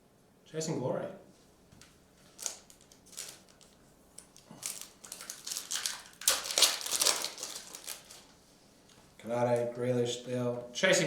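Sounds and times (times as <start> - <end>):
foil wrapper crinkling: 2.2 - 8.4.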